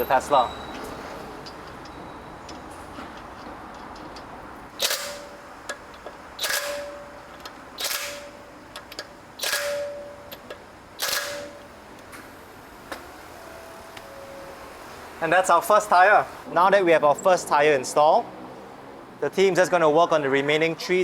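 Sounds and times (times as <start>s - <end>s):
pneumatic impact wrench bursts: 4.7s - 10.4s, 11.0s - 11.7s.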